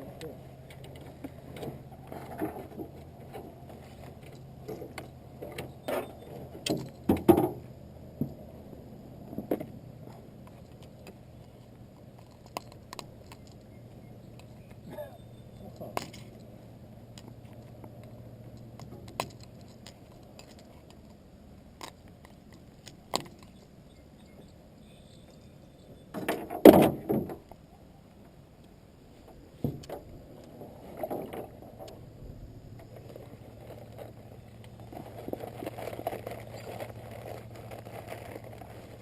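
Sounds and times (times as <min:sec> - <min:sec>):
steady low hum: 0:27.0 - 0:39.0.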